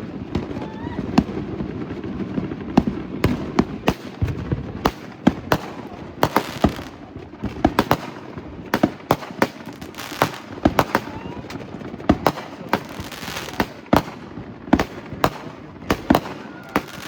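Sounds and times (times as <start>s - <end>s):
fireworks bangs: 0.0s - 17.0s
fireworks crackling: 0.0s - 17.0s.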